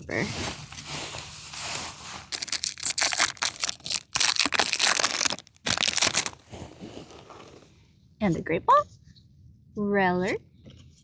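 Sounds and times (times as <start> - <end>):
foil wrapper tearing and crinkling: 0.6 - 6.4.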